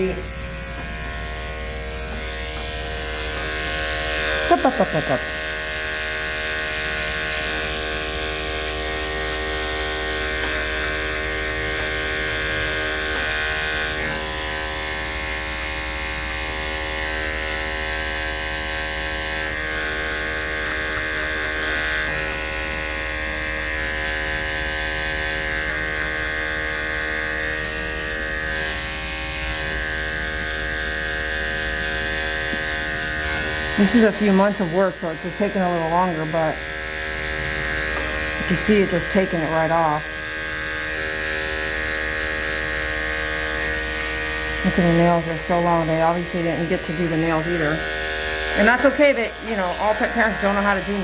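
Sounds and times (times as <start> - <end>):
electric clipper buzzing: 0.0 - 51.0.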